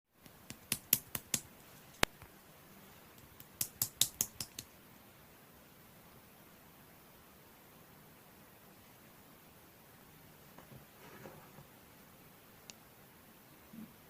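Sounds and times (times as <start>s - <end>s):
faint steady hiss: 0.1s - 14.0s
sharp clicks: 3.2s - 4.7s.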